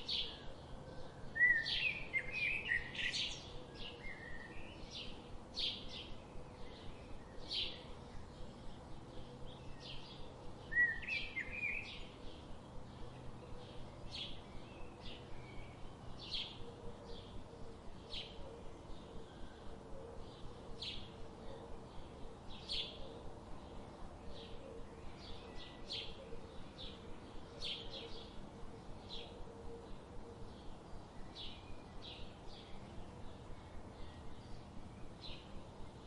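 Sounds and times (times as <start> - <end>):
faint steady hiss: 0.0 - 36.0.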